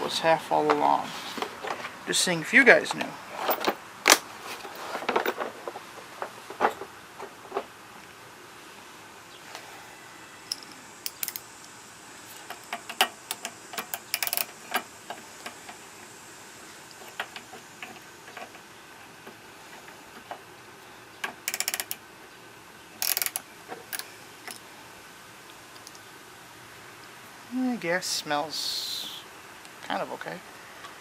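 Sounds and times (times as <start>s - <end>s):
socket ratchet clicking: 10.5s - 11.8s, 12.5s - 15.6s, 21.2s - 22.0s, 23.0s - 24.6s
tool and metal parts knocking: 12.5s - 15.6s, 21.2s - 22.0s.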